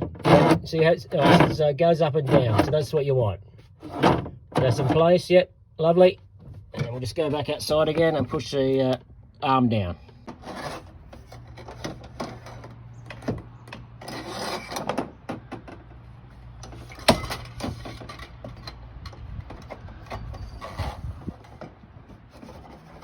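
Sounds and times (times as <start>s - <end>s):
handling knocks and clatter: 10.1s - 23.0s.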